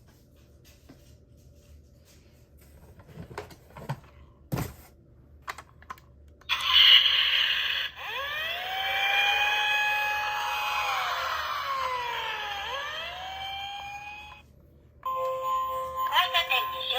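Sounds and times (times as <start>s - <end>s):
toy electronic siren wailing: 6.5s - 14.4s.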